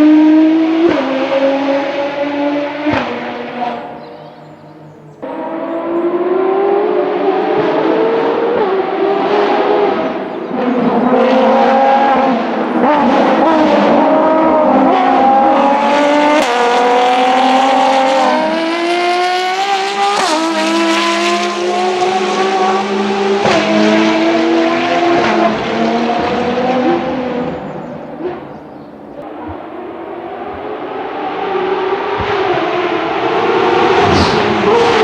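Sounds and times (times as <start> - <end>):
race car engine accelerating: 0.0 - 35.0.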